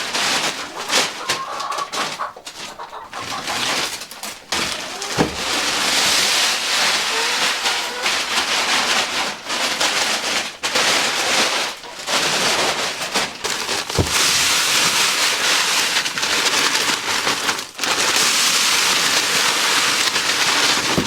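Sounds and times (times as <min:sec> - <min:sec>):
hens clucking: 0:00.0 - 0:09.4
grain pouring into trough: 0:00.0 - 0:21.0.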